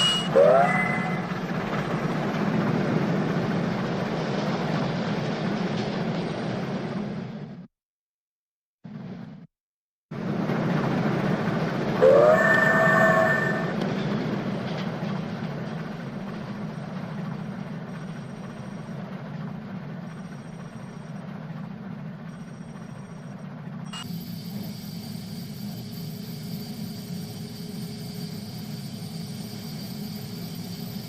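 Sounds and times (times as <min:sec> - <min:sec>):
train wheels rumbling on rails: 0:00.0 - 0:07.7, 0:10.2 - 0:22.9.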